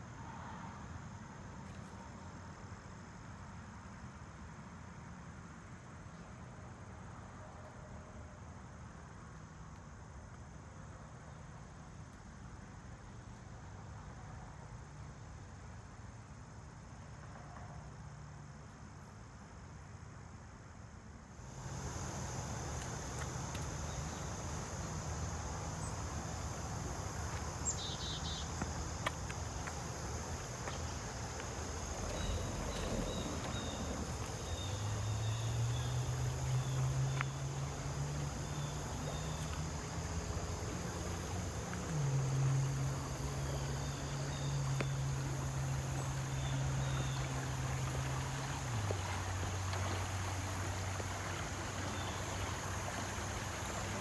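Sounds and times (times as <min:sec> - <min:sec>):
insect chorus: 0:21.3 - 0:54.0.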